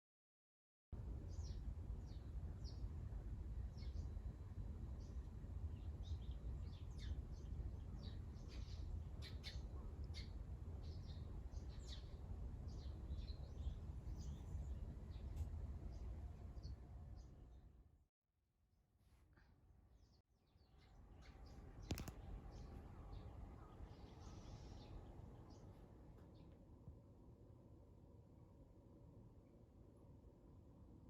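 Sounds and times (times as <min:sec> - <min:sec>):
sparrows chirping: 0:05.8 - 0:17.3, 0:20.6 - 0:26.4.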